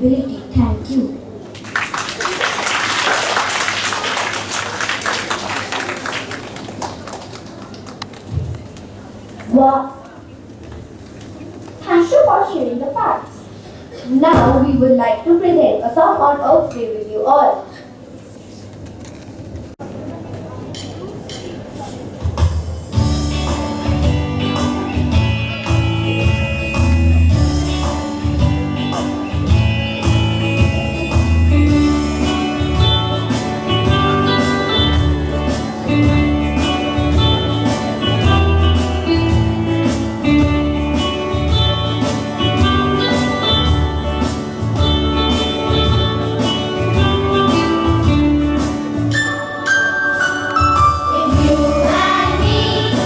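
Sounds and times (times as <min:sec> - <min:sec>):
song with steady beat and bass: 0:22.4 - 0:53.0.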